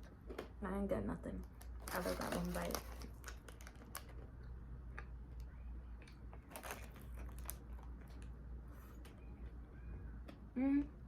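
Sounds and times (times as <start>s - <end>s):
crunchy food chewing: 6.0s - 8.2s.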